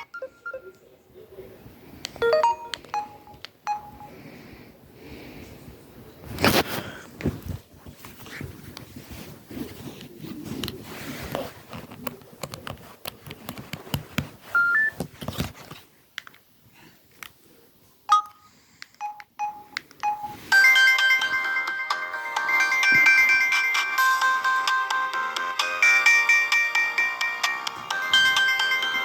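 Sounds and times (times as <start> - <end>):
ringtone melody: 2.2 - 4.2, 18.1 - 29.0
phone handling rustle: 6.3 - 16.4.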